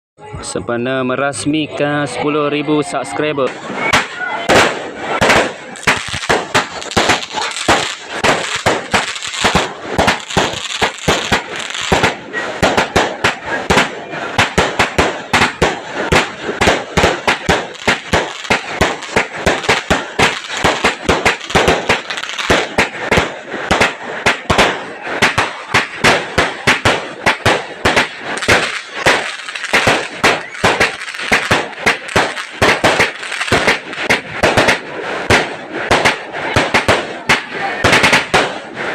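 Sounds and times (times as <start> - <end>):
fireworks bangs: 3.4 - 38.9.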